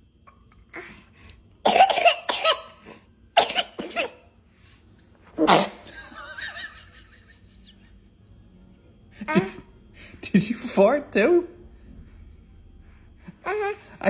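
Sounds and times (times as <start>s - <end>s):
baby sneezing and coughing: 1.6s - 2.8s, 3.4s - 4.3s, 5.4s - 5.9s.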